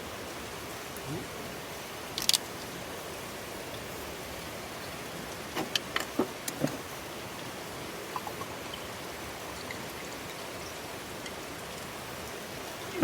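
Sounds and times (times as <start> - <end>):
light rain hissing: 0.0 - 13.0.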